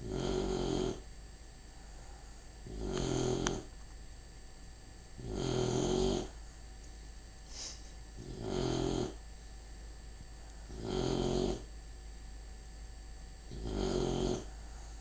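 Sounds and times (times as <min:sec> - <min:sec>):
pet snoring: 0:00.0 - 0:01.0, 0:02.6 - 0:03.7, 0:05.2 - 0:06.4, 0:08.2 - 0:09.2, 0:10.7 - 0:11.7, 0:13.4 - 0:15.0.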